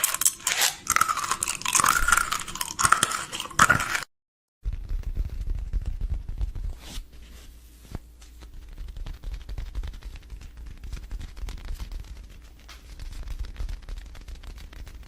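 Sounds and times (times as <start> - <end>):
items clicking and knocking: 0.0 - 4.1.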